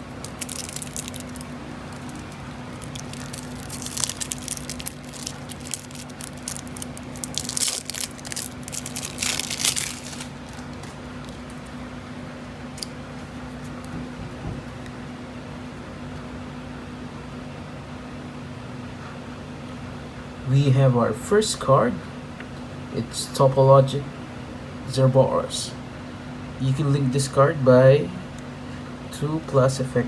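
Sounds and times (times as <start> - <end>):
plastic wrap and cardboard crinkling: 0.0 - 11.8
faint low hum: 0.0 - 15.5.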